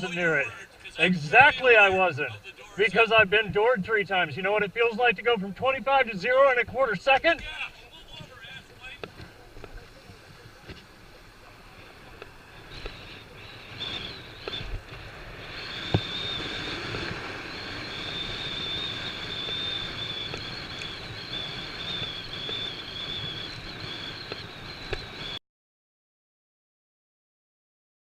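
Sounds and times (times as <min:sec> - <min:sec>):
road noise: 0:00.0 - 0:25.4
high-pitched wavering whine: 0:11.2 - 0:25.4.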